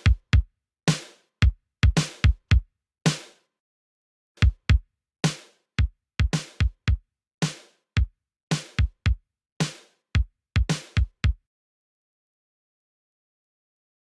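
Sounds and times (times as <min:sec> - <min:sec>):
drum machine kick drums: 0:00.0 - 0:02.6, 0:04.4 - 0:11.4
drum machine snare hits: 0:00.9 - 0:01.1, 0:01.8 - 0:03.3, 0:04.4 - 0:05.5, 0:06.2 - 0:07.7, 0:08.5 - 0:09.9, 0:10.6 - 0:11.4.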